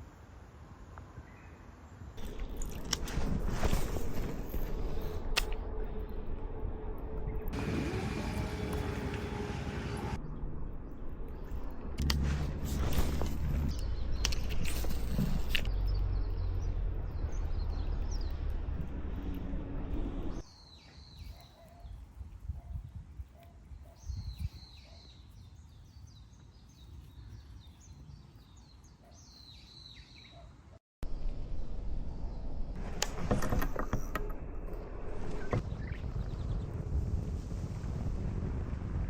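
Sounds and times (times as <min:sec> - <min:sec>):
low rumbling noise: 0:02.2 - 0:20.4, 0:31.0 - 0:39.0
small birds chirping: 0:12.8 - 0:30.8.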